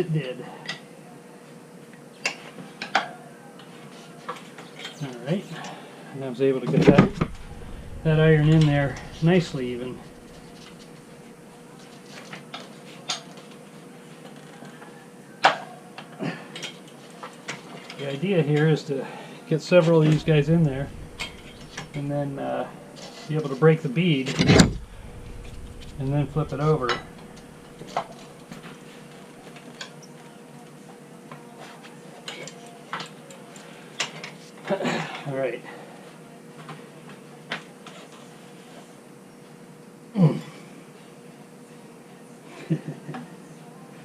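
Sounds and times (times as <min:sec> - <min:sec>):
tire irons clanking on wheel rim: 0:24.4 - 0:27.7.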